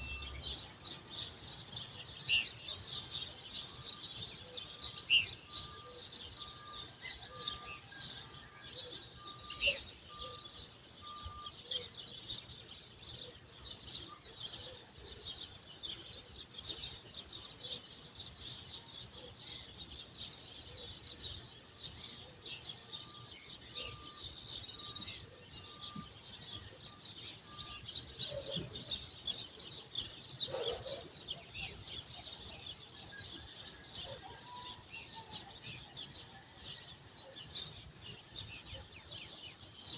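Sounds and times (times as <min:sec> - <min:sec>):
small birds chirping in chorus: 0:00.0 - 0:39.9.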